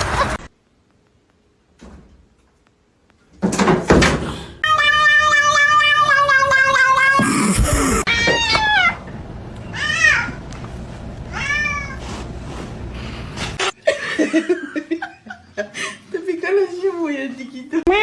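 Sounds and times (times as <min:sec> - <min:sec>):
cat meowing long: 0:04.6 - 0:09.0.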